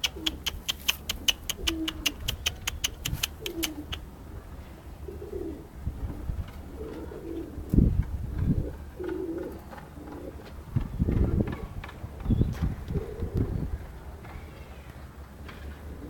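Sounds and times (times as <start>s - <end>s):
sharp clicks: 0.0s - 4.0s
pigeons cooing: 0.0s - 4.1s, 4.8s - 11.6s, 12.3s - 13.8s, 15.7s - 16.0s.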